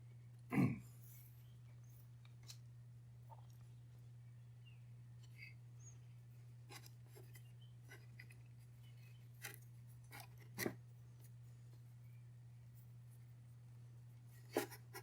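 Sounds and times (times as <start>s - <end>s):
steady low hum: 0.0s - 15.0s
small clicks and rubs: 6.4s - 11.9s.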